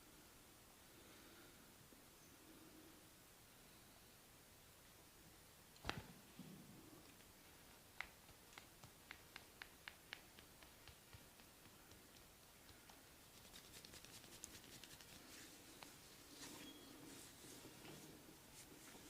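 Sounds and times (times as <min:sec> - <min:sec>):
hands tapping on skin: 0:07.7 - 0:15.2.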